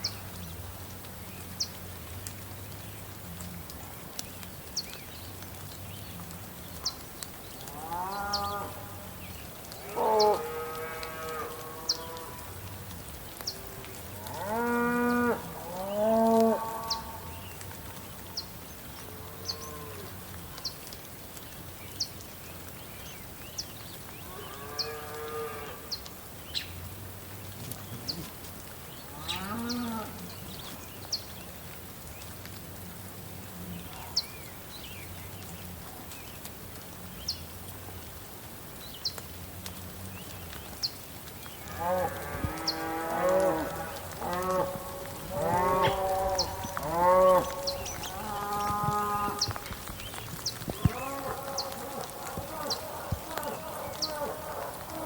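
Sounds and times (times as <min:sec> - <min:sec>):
rain hissing: 0:00.0 - 0:55.0
cows mooing: 0:14.2 - 0:17.3, 0:41.7 - 0:49.6, 0:50.7 - 0:55.0.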